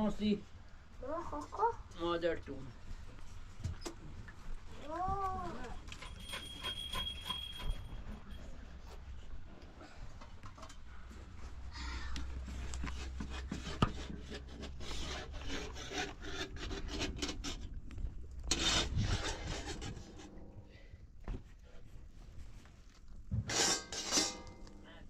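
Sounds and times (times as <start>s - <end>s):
rough scraping strokes: 12.4s - 17.8s, 18.4s - 20.5s.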